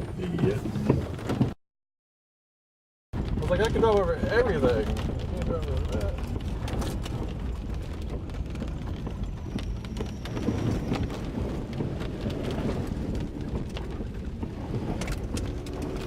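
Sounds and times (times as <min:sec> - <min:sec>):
rain pattering: 0:03.2 - 0:16.0
steady low rumble: 0:03.2 - 0:16.0.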